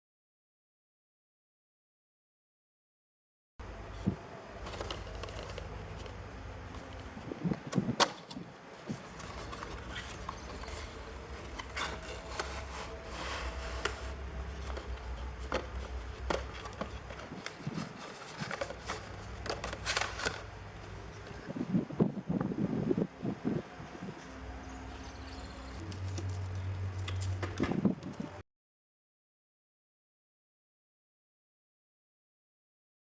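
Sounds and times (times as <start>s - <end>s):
steady low hum: 3.6s - 28.4s
packaging clicks and rustles: 4.1s - 21.5s.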